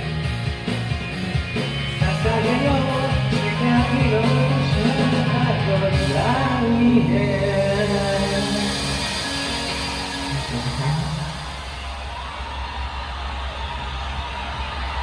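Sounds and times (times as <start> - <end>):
rock band with guitar: 0.0 - 15.0
person singing: 1.7 - 11.7.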